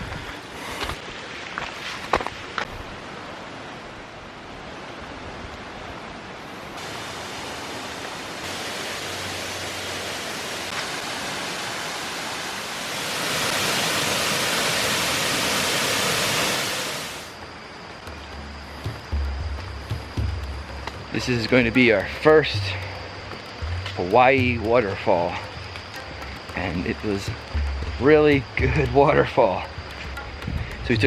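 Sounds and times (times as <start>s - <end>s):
waterfall rushing: 6.6s - 31.0s.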